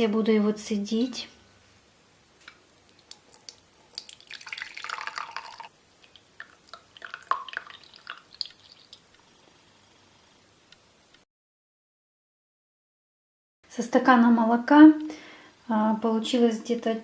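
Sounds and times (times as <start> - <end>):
dripping: 2.9 - 9.5
liquid pouring: 2.9 - 9.6.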